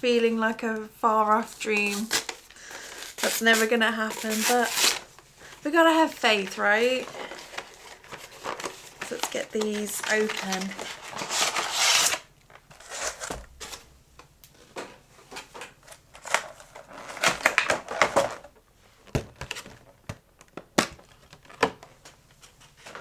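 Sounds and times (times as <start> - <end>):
cardboard tearing and rustling: 1.7 - 5.2, 6.2 - 13.9, 15.8 - 18.5
crinkles taps and clicks: 17.4 - 22.2.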